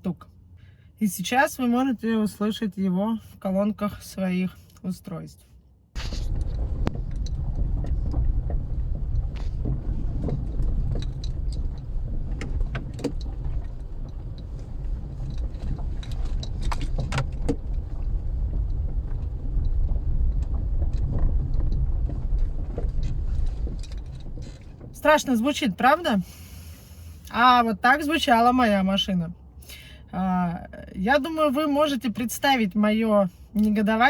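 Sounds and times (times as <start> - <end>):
road rumble: 0.0 - 34.0
suspension knocks and rattles: 6.0 - 26.0.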